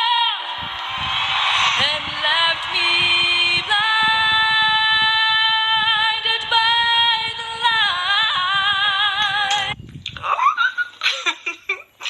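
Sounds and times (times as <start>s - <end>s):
woman singing with vibrato: 0.0s - 0.7s, 1.7s - 9.8s.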